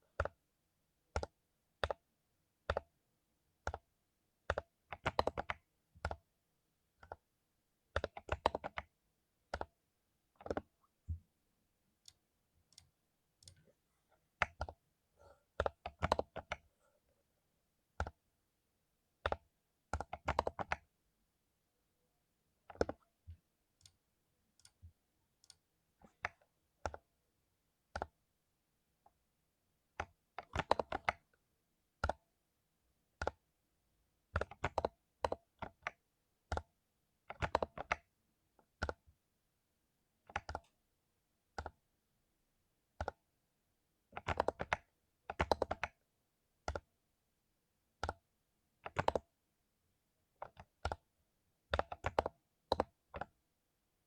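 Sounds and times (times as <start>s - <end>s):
mechanical keyboard typing: 4.5s - 6.2s, 8.0s - 8.9s, 10.4s - 10.7s, 15.6s - 16.6s, 19.2s - 20.9s, 22.7s - 23.0s, 30.0s - 31.2s, 34.4s - 36.6s, 37.3s - 38.1s, 44.2s - 46.0s, 46.7s - 46.9s, 48.8s - 49.2s, 50.4s - 51.1s, 51.7s - 53.4s.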